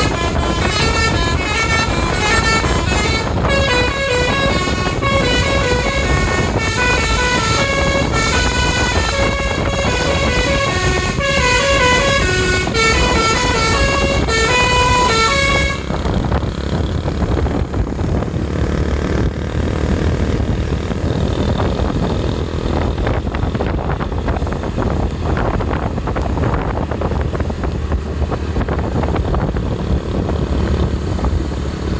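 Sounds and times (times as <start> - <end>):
multi-tone air horn melody: 0.0 - 16.2
engine and road rumble: 0.0 - 31.9.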